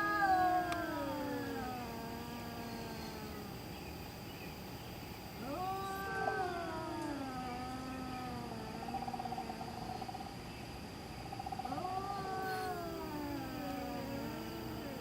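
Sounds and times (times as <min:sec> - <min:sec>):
cat yowling: 0:00.0 - 0:03.5, 0:05.4 - 0:09.7, 0:11.6 - 0:15.0.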